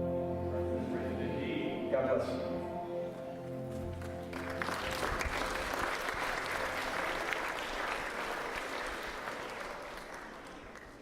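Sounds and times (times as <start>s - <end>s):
congregation applauding: 3.9s - 11.0s.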